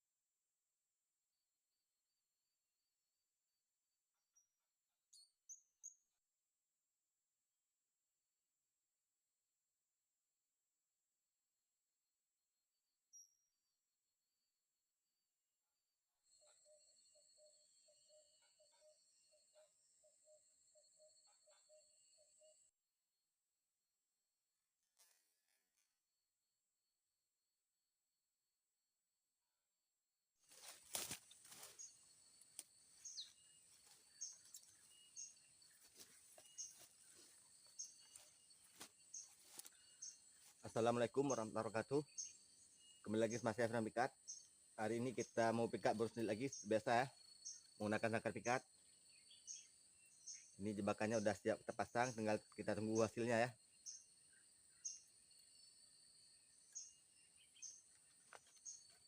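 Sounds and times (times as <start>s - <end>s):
bird chirping: 30.6s - 59.0s.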